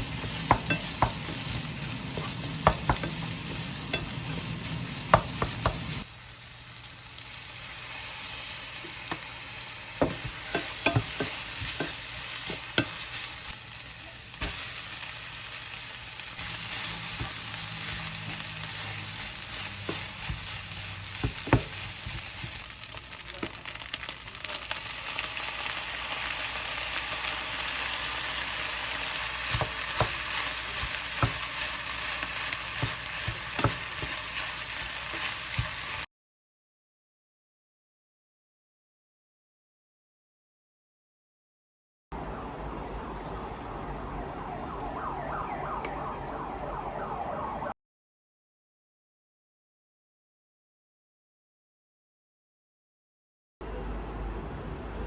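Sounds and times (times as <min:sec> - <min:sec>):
food sizzling in a pan: 0:00.0 - 0:36.1.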